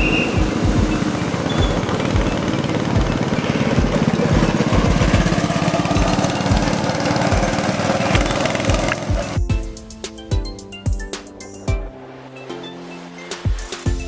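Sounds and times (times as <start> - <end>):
rough motor-like noise: 0.0 - 9.4
music beat thumps: 0.0 - 12.0, 13.3 - 14.0.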